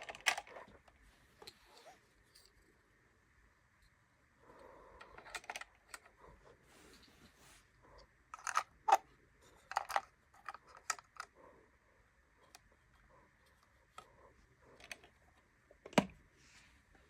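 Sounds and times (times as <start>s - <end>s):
plastic toys clicking and tapping: 0.0s - 0.6s, 5.0s - 6.1s, 8.4s - 9.0s, 9.6s - 11.3s
plastic toys clattering: 0.0s - 1.7s, 5.0s - 6.2s, 8.4s - 11.3s.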